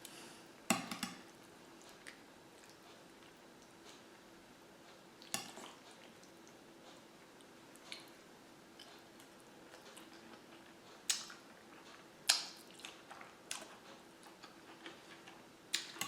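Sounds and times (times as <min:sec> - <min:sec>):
faint steady hum: 0:00.0 - 0:16.0
chewing clicks and smacks: 0:08.8 - 0:16.0.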